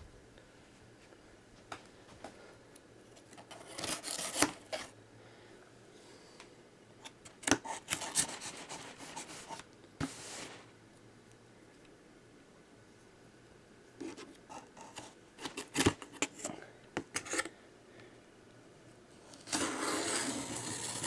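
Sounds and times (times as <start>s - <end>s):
cardboard and tape scraping: 3.4s - 4.9s, 7.6s - 10.7s, 19.3s - 21.0s.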